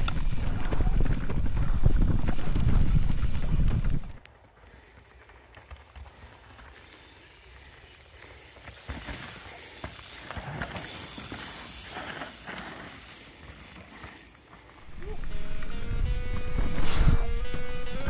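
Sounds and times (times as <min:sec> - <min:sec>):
bike knocking and rattling: 0:00.0 - 0:15.4
bike tyre rush: 0:00.0 - 0:17.6.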